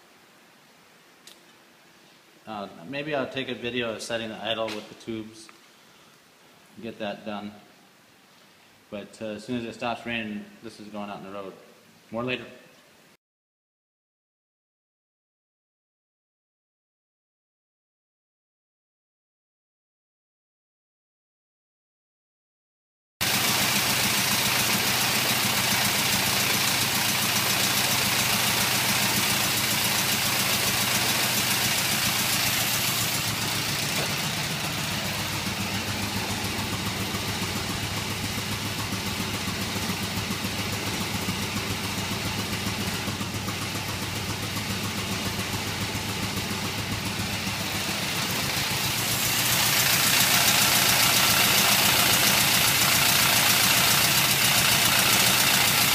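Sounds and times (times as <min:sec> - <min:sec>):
car engine idling: 0:23.2 - 0:55.9.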